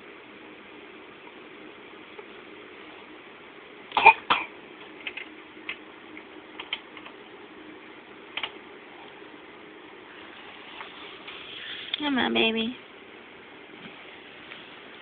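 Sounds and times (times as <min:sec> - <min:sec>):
faint steady hum: 0:00.0 - 0:15.0
child coughing: 0:04.0 - 0:04.6.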